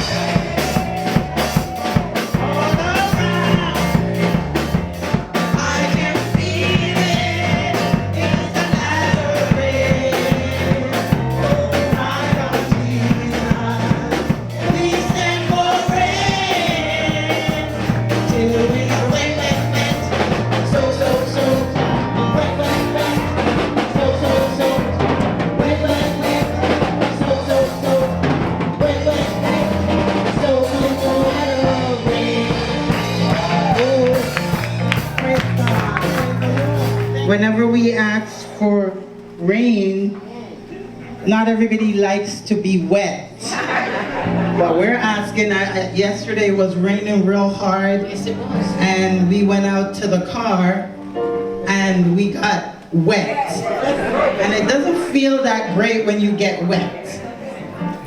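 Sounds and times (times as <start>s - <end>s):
drum kit and bass groove: 0.0s - 37.5s
voices singing: 0.0s - 38.9s
gospel praise song: 0.0s - 58.0s.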